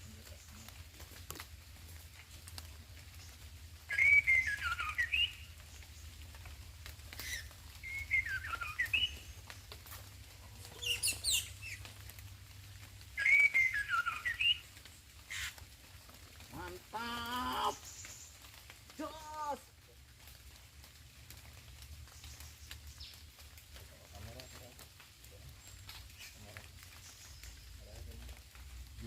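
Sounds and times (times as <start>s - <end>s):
bird singing whistled phrases: 3.9s - 5.5s, 7.2s - 9.3s, 13.2s - 14.6s.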